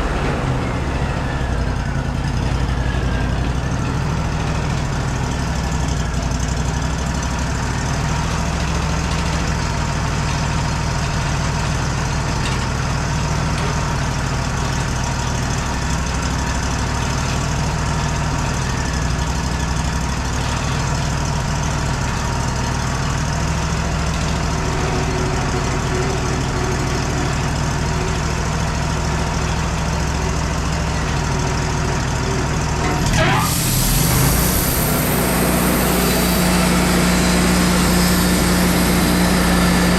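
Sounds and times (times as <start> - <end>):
sawmill engine running: 0.0 - 39.9
strong hiss: 33.1 - 39.9.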